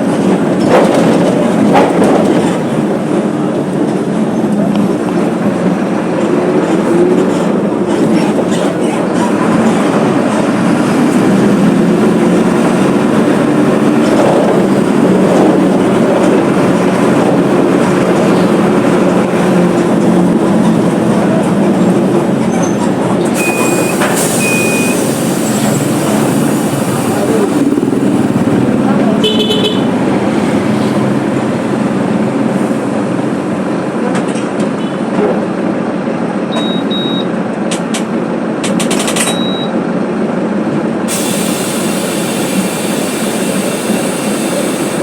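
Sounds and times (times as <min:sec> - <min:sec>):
bus diesel engine humming: 0:00.0 - 0:45.0
short high beeps: 0:23.4 - 0:25.0, 0:36.5 - 0:37.3, 0:39.3 - 0:39.8.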